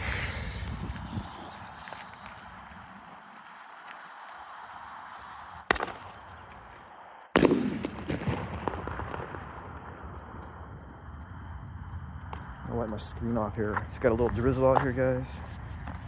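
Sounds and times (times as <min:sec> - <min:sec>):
firework launch report: 0:00.0 - 0:15.5
firework shell bang: 0:05.7 - 0:06.1, 0:07.4 - 0:08.5
rumbling echo: 0:05.7 - 0:12.7.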